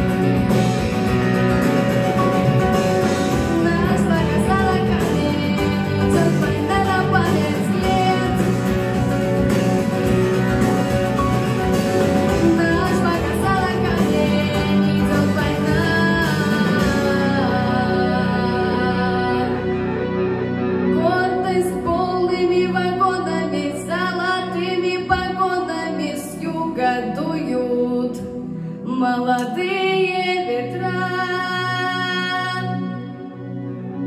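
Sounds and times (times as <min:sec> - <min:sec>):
melodic lead line: 0:00.0 - 0:23.3
guitar accompaniment: 0:00.0 - 0:34.0.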